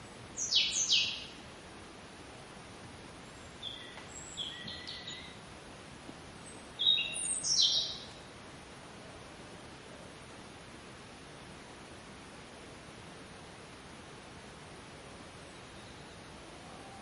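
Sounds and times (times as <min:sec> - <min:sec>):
songbird chirping: 0:00.0 - 0:01.4, 0:03.2 - 0:05.5, 0:06.4 - 0:08.3, 0:15.4 - 0:17.0
steady hiss: 0:00.0 - 0:17.0.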